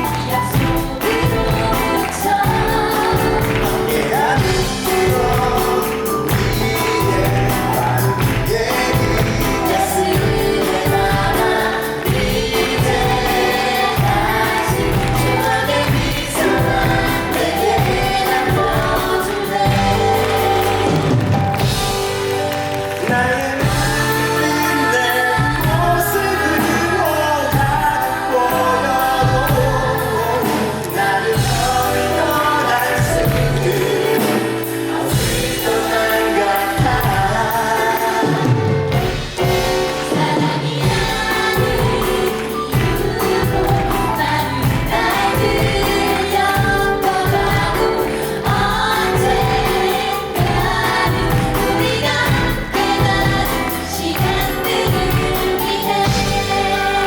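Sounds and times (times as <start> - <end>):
cast singing in chorus: 0.0 - 22.0, 23.1 - 57.0
live band accompaniment: 0.0 - 57.0.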